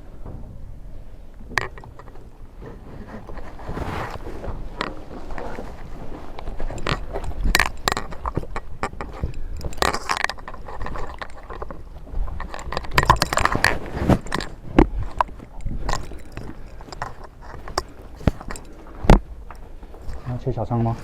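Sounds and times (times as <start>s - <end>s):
clicks and knocks: 1.3s - 20.3s
gear and clothing rustling: 1.6s - 21.0s.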